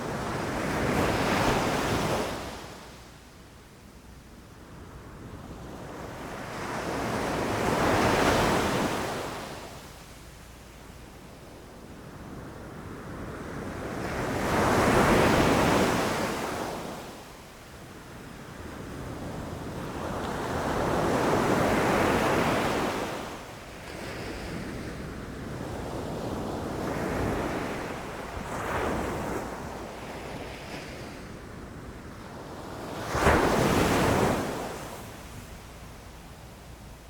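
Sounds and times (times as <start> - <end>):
ocean waves crashing on shore: 19.4 - 36.2.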